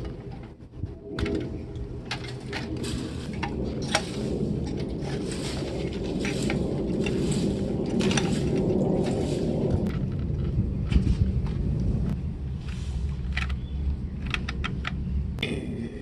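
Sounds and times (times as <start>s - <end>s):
steady low rumble: 0.0s - 16.0s.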